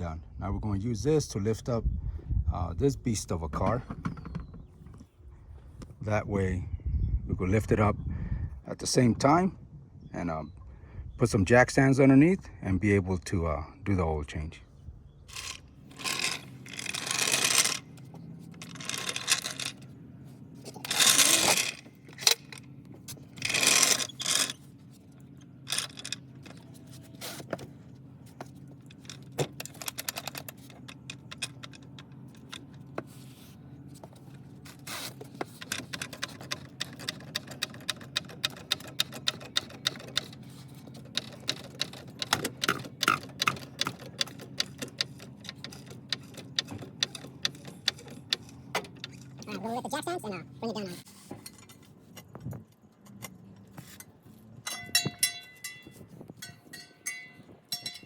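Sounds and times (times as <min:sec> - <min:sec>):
metal scraping: 0:15.3 - 0:19.9, 0:20.6 - 0:25.1
floor jack clicking: 0:20.7 - 0:22.6.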